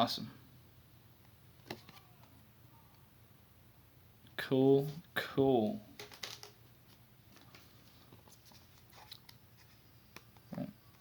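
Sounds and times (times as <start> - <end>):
cards and packaging rustling: 6.0 - 11.0.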